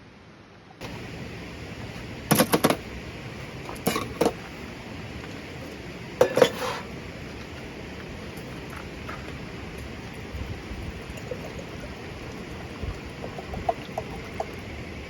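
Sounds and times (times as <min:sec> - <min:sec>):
steady background hiss: 0:00.0 - 0:15.0
metal cookware clinking: 0:06.2 - 0:06.8.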